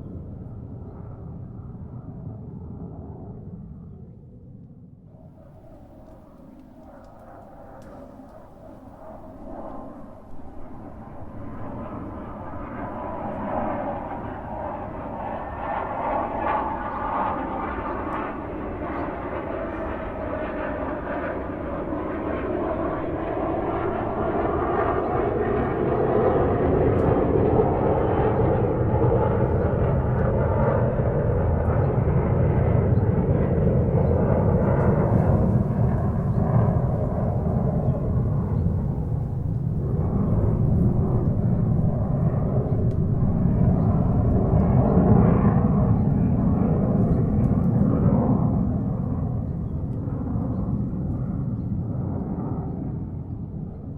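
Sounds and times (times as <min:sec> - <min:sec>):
airliner cabin air rush and engine drone: 0:33.8 - 0:49.6.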